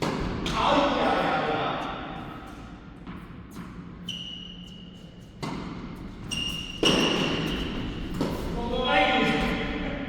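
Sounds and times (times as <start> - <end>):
shoes squeaking on court: 3.5 - 8.5.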